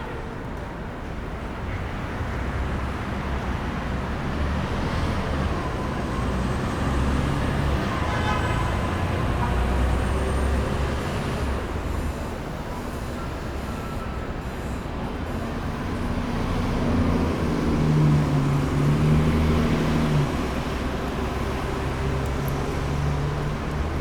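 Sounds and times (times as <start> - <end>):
street traffic: 0.0 - 24.0
heavy vehicle rumbling past: 15.5 - 24.0.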